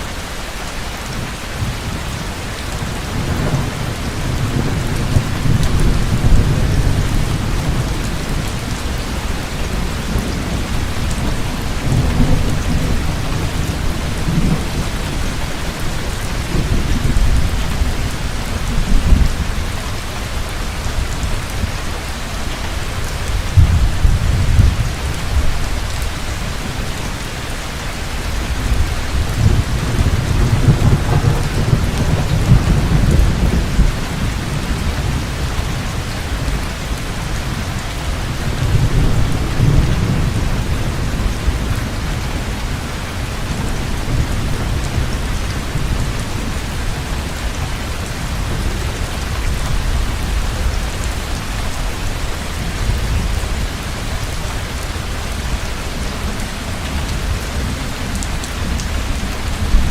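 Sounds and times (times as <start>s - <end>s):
heavy rain falling: 0.0s - 59.9s
deep rolling thunder: 1.1s - 19.8s, 23.2s - 27.0s, 28.2s - 37.6s, 38.2s - 54.3s.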